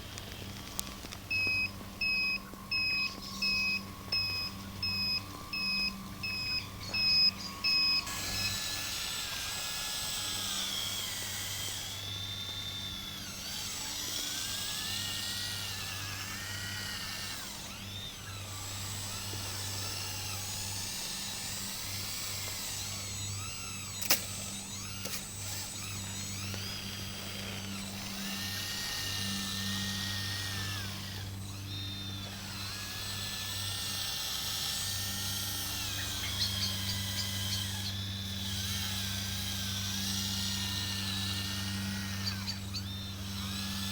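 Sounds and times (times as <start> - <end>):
electric motors whining: 0.0 - 43.9
low hum: 0.0 - 43.9
sharp click: 24.0 - 24.4.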